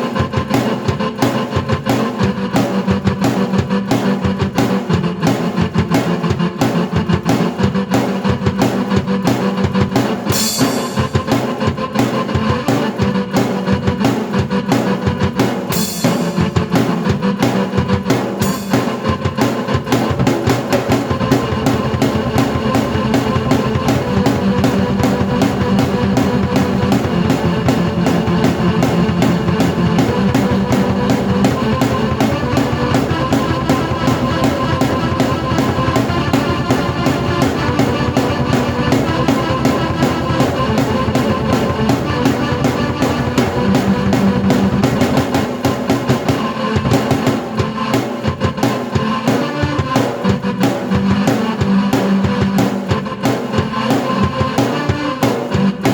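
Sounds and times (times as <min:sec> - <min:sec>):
driving drum beat: 0:00.0 - 0:55.9
cymbal crashes: 0:10.3 - 0:11.7
sustained keyboard: 0:16.4 - 0:48.5.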